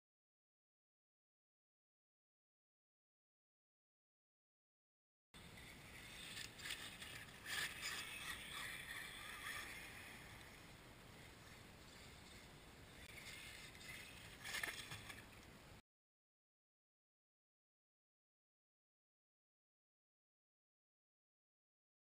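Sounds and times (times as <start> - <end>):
tyres churning snow: 5.6 - 10.6.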